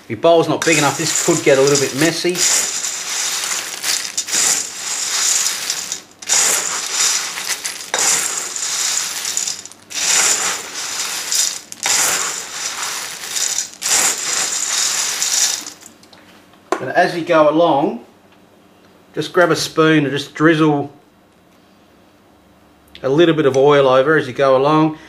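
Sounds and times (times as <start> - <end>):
cereal pouring into a bowl: 0.6 - 16.0.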